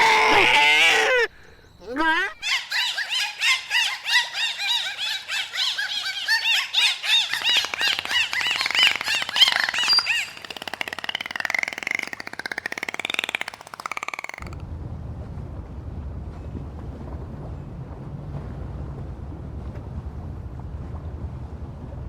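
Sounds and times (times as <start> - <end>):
animal squeaky calls: 0.0 - 14.5
raspy buzzing chatter: 7.2 - 14.5.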